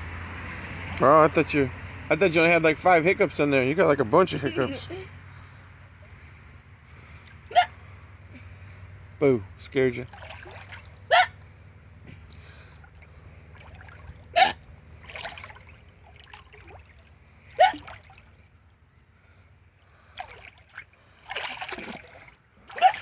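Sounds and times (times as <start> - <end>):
water trickling and lapping: 0.0 - 23.0
person hiccuping: 7.5 - 7.7, 11.1 - 11.3, 14.4 - 14.6.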